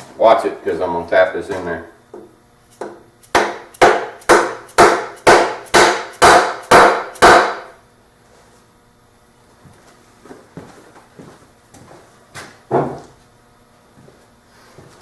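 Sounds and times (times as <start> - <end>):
hammer blows ringing on metal: 3.3 - 7.8.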